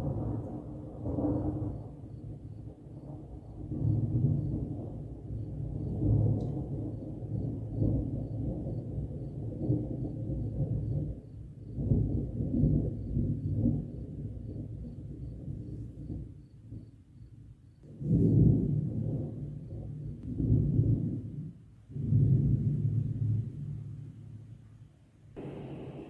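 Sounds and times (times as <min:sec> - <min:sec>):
rolling thunder: 0:00.0 - 0:16.3, 0:25.4 - 0:26.0.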